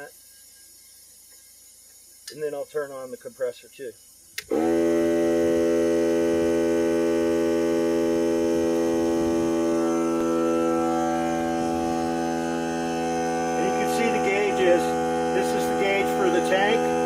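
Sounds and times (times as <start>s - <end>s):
electric air compressor running: 4.4s - 17.0s.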